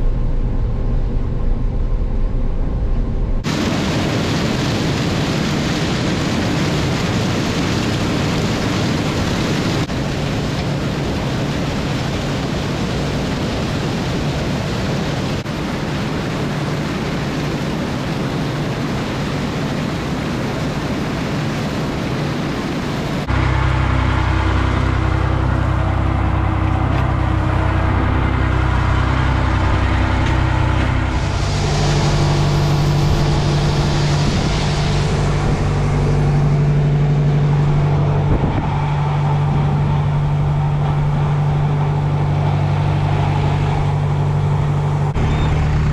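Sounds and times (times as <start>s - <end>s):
loud engine droning: 0.0s - 13.6s, 23.2s - 45.9s
vehicle engine and road noise: 0.0s - 45.9s.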